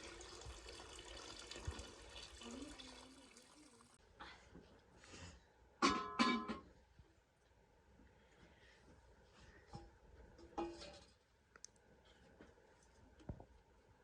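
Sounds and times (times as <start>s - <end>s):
water running: 0.0s - 4.0s.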